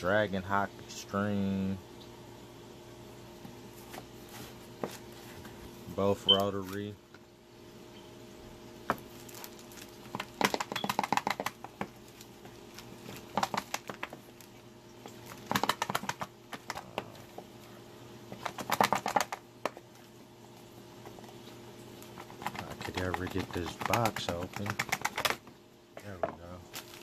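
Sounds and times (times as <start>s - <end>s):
packaging clicking and crackling: 9.1s - 17.4s, 18.3s - 20.1s, 22.0s - 27.0s.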